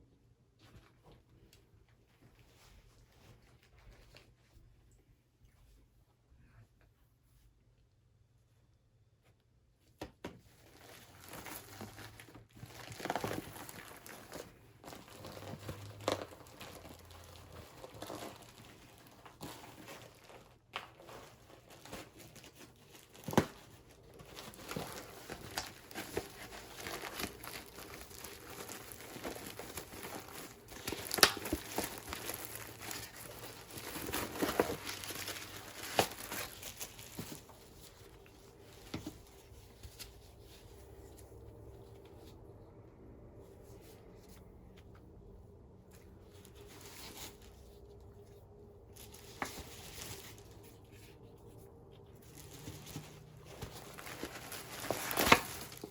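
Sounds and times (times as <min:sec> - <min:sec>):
packaging crinkling and tearing: 0:10.6 - 0:40.2, 0:46.2 - 0:55.9.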